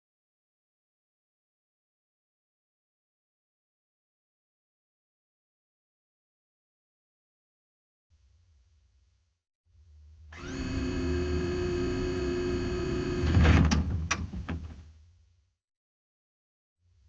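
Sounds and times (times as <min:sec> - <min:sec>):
printer whirring: 0:10.4 - 0:13.4.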